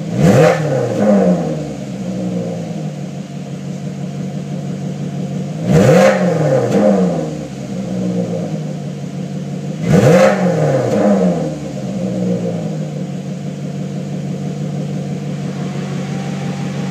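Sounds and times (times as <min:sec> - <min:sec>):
car engine idling and revving: 0:00.0 - 0:16.9.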